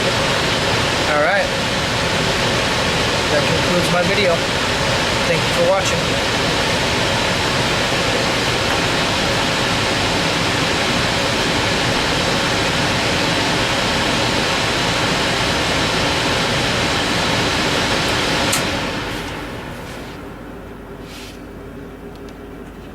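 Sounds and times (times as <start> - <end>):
furnace blower rushing air: 0.0 - 21.8.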